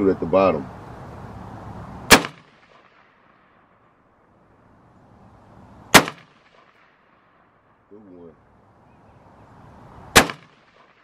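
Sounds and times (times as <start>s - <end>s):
pistol shot with echo: 2.1s - 3.1s, 5.9s - 7.0s, 10.1s - 11.0s.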